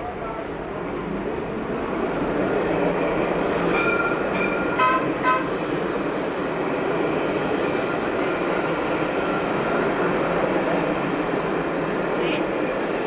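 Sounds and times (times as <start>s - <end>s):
tram rumbling past: 0.0s - 13.0s
tram horn toots: 3.7s - 5.8s.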